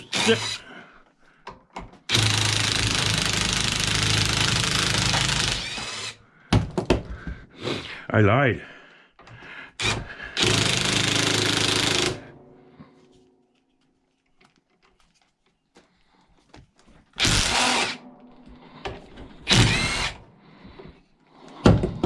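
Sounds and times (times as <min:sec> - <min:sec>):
power drill running: 0:00.0 - 0:00.6, 0:02.1 - 0:06.2, 0:09.8 - 0:12.2, 0:17.2 - 0:18.0, 0:19.4 - 0:20.2.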